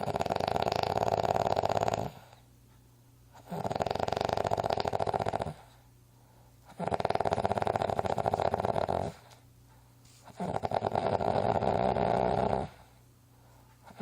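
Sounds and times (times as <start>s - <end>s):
rattling snore: 0.0s - 2.4s, 3.4s - 5.7s, 6.7s - 9.3s, 10.2s - 12.8s.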